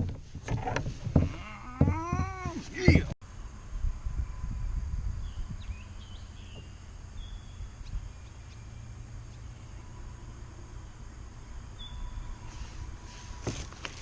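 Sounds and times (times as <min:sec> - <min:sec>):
wind on microphone: 0:03.6 - 0:08.1
faint bird chirps: 0:11.7 - 0:12.7.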